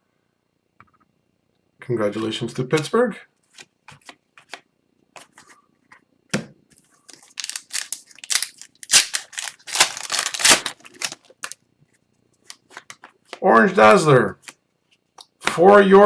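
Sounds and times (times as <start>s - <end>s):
cards scraping: 7.1s - 11.6s
wrapper crinkling and tearing: 7.1s - 11.6s.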